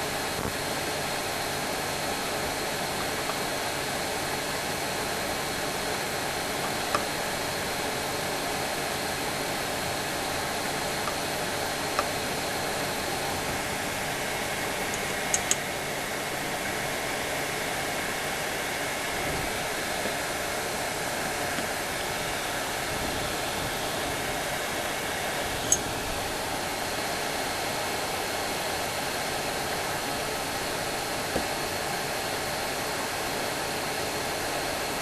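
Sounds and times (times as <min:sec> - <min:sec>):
fan blowing: 0:00.0 - 0:35.0
small sharp clicks: 0:14.9 - 0:15.6.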